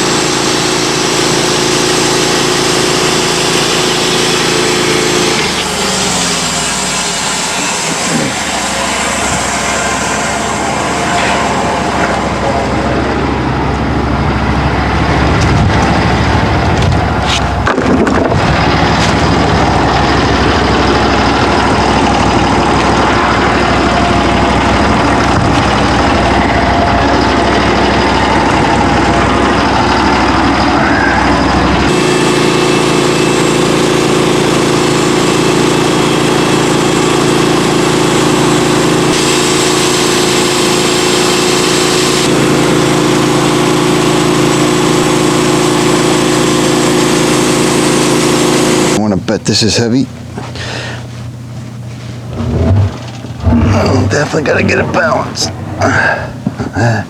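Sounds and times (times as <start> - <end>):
sawmill engine running: 0.0 - 57.0
band blade sawing through log: 3.3 - 10.2, 52.2 - 55.2.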